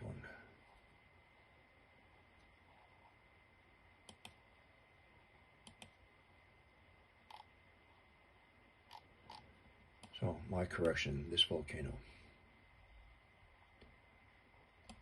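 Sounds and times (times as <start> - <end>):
faint computer mouse clicks: 4.0 - 4.4, 5.6 - 6.0, 7.3 - 7.5.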